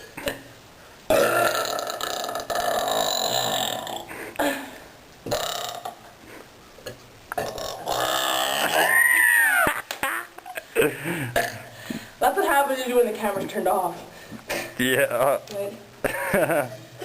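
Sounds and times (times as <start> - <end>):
person belching loudly: 1.1 - 4.2, 5.3 - 6.1, 7.3 - 9.8, 11.3 - 11.7.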